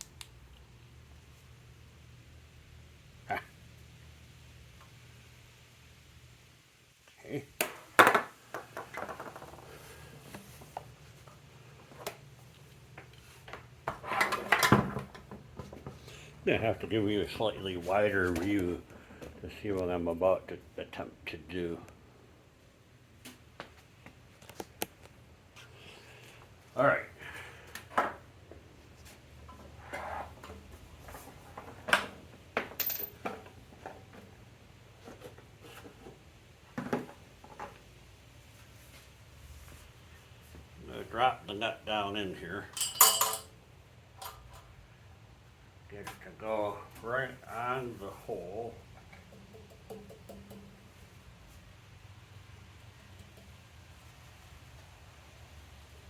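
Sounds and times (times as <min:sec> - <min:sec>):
metal parts clicking and rattling: 0:42.7 - 0:43.5
small metal clicks and knocks: 0:49.0 - 0:50.9.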